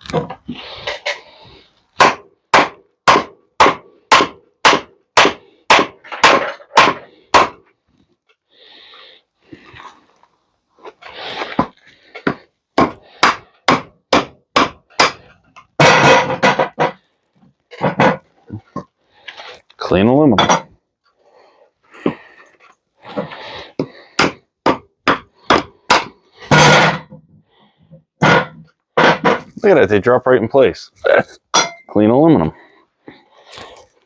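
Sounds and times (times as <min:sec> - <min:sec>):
hammer striking metal: 0:02.0 - 0:07.6, 0:12.8 - 0:15.2, 0:31.5 - 0:31.9.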